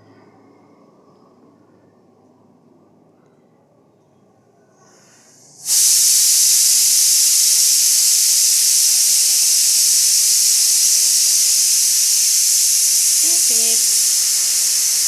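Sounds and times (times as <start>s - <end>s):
loud steady hiss: 4.8s - 15.0s.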